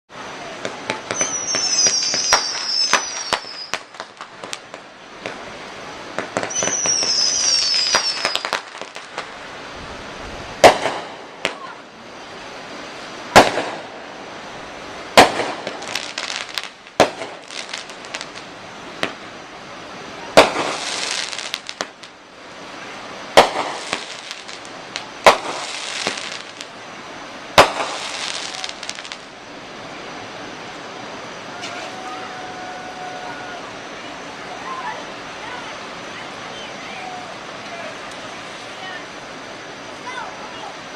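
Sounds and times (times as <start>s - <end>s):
fireworks crackling: 0.1s - 40.9s
firework bangs: 0.5s - 9.4s, 10.3s - 11.8s, 13.0s - 14.2s, 14.8s - 19.3s, 20.2s - 26.7s, 27.4s - 29.3s, 31.4s - 33.7s
whistles falling in pitch: 1.1s - 3.9s, 6.5s - 8.5s.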